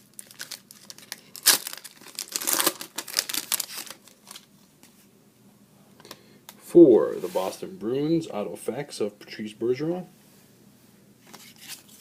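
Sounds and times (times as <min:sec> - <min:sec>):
foil wrapper crinkling and tearing: 0:00.0 - 0:04.5.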